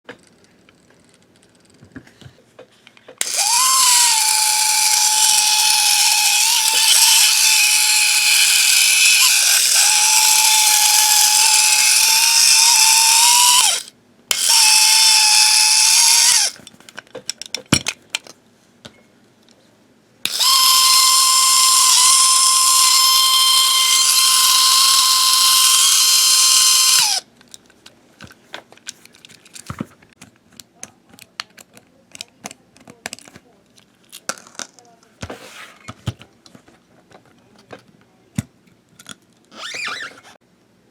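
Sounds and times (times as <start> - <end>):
toy train motor whining: 3.2 - 16.6, 20.3 - 27.2, 39.5 - 40.4.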